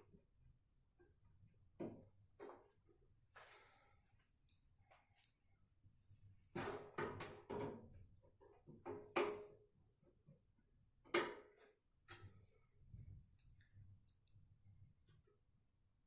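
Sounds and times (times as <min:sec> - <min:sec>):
metallic screw clicks and clinks: 0:14.0 - 0:14.4.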